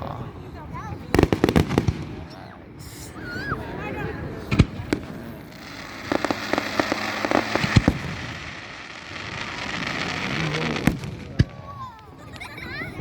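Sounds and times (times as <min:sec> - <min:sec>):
fireworks bangs: 0:01.0 - 0:03.0, 0:04.4 - 0:12.7
fireworks crackling: 0:01.0 - 0:03.2, 0:04.4 - 0:13.0.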